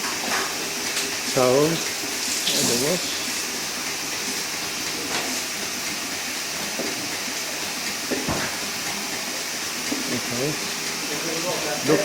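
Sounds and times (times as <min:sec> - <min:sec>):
water spraying from hose: 0:00.9 - 0:08.0.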